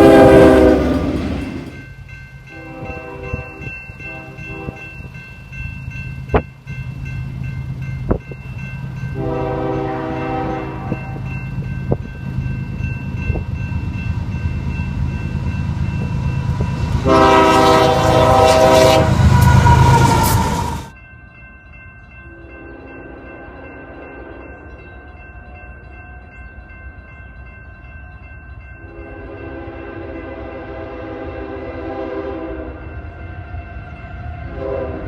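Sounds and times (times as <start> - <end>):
train air horn blasts: 0.0 - 1.2, 2.5 - 4.9, 9.2 - 11.3, 16.9 - 20.9, 28.9 - 32.9, 34.4 - 35.0
train rumbling: 0.0 - 35.0.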